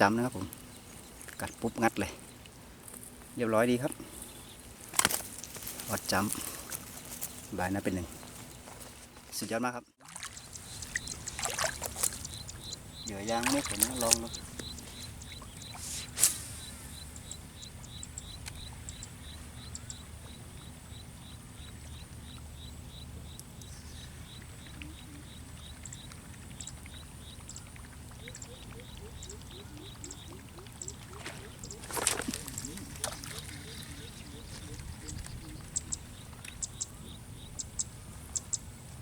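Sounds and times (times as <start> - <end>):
low wind rumble: 29.0 - 39.0.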